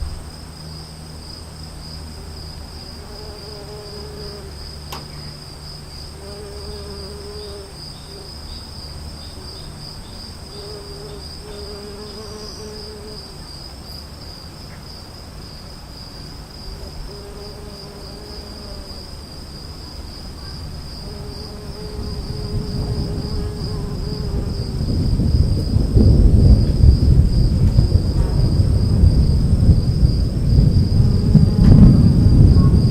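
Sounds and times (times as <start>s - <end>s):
thunder rumble: 0.0s - 3.6s, 19.2s - 32.9s
insects trilling: 0.0s - 32.9s.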